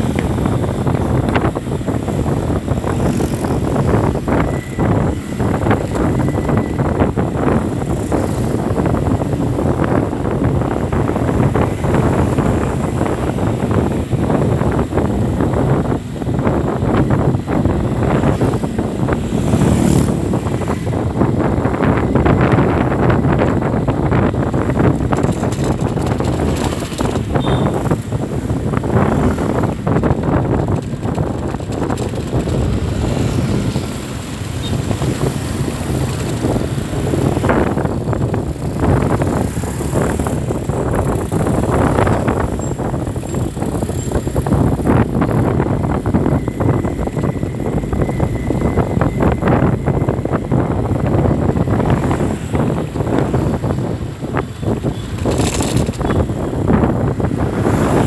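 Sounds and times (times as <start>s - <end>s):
vehicle engines running: 0.0s - 58.0s
wind gusting on microphone: 0.0s - 58.0s.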